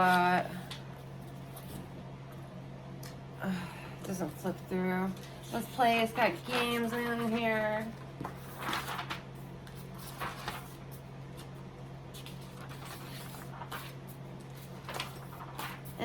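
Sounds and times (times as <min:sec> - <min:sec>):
steady low hum: 0:00.0 - 0:16.0
pages rustling: 0:05.2 - 0:16.0.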